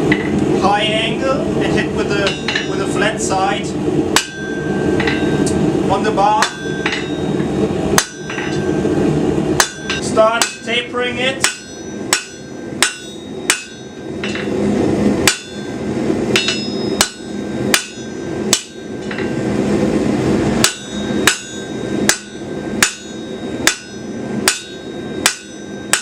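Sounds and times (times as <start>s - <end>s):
steady rushing noise: 0.0s - 26.0s
hammer striking steel on anvil: 2.2s - 2.9s, 4.1s - 5.5s, 6.4s - 8.9s, 9.6s - 10.8s, 11.4s - 14.6s, 15.2s - 19.4s, 20.6s - 26.0s.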